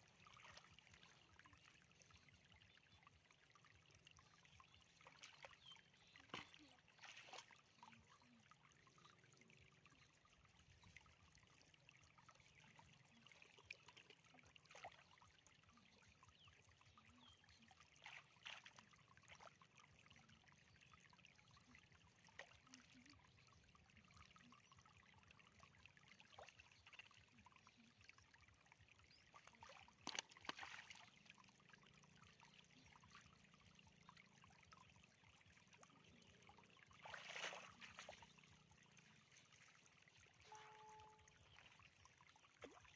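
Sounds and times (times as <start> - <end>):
water splashes: 0.0 - 42.9
water trickling: 0.0 - 42.9.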